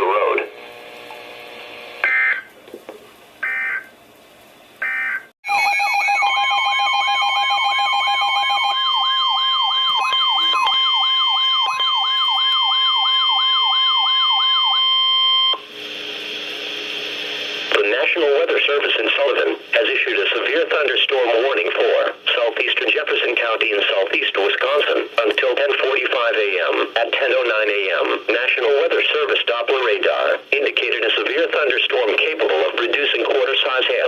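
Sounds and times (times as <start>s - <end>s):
beeping tones: 3.4s - 3.9s, 4.8s - 6.8s, 7.5s - 15.6s
digital data code bursts: 3.4s - 3.9s, 4.8s - 6.1s, 9.1s - 15.5s
steady warning tone: 4.8s - 15.7s
wailing siren-like sweep: 4.9s - 15.3s
radio hiss: 15.6s - 34.0s.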